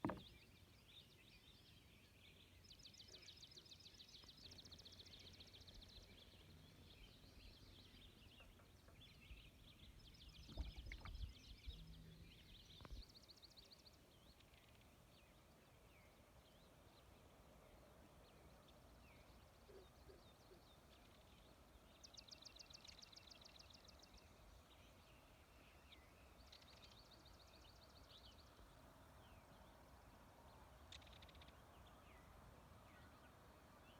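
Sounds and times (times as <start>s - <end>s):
soft low knocks: 0.0s - 0.3s
faint outdoor ambience: 0.0s - 33.9s.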